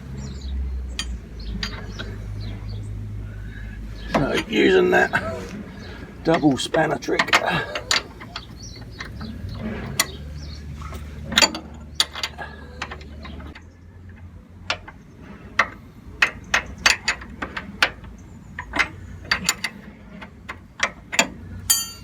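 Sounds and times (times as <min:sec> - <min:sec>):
spanners clicking on bolts: 0:00.9 - 0:02.2, 0:06.3 - 0:22.0.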